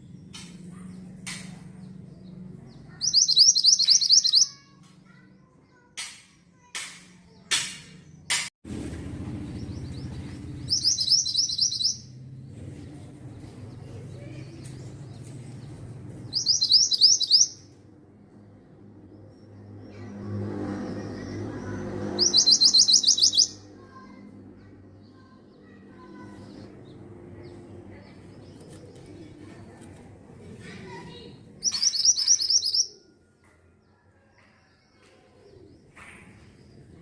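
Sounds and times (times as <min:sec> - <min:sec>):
songbird singing high notes: 0:03.0 - 0:04.6, 0:10.7 - 0:12.1, 0:16.3 - 0:17.6, 0:22.2 - 0:23.6, 0:31.6 - 0:33.0.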